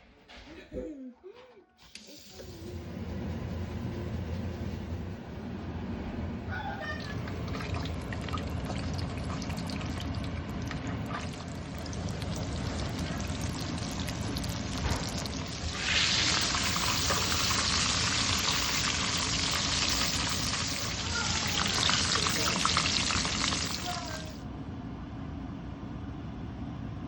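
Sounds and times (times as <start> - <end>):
fish sizzling in hot oil: 11.6 - 24.3.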